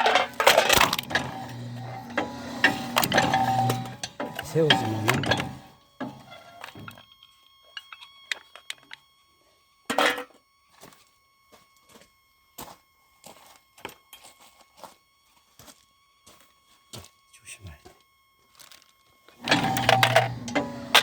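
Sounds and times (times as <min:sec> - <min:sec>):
log splitter motor whining: 0:00.0 - 0:21.0
mechanism clicks and knocks: 0:02.1 - 0:06.2.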